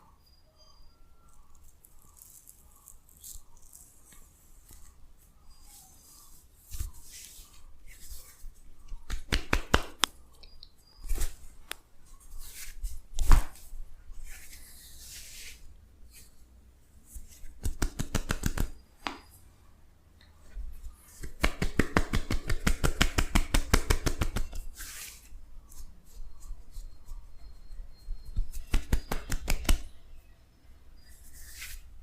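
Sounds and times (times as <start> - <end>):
hands rubbing hair and skin: 6.0 - 10.2, 17.1 - 18.8, 21.1 - 27.2, 28.4 - 29.9.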